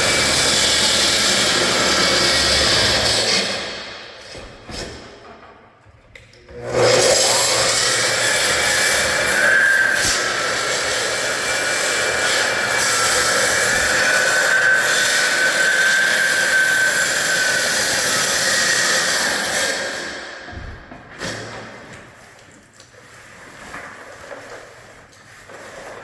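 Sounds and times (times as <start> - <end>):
electric saw cutting: 0.0 - 4.0, 6.5 - 20.4.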